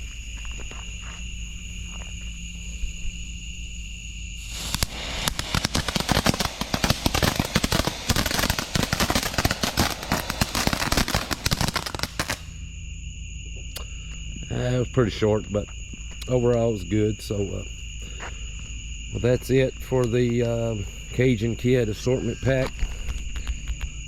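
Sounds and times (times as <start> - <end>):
fountain firework crackling: 4.4 - 12.6.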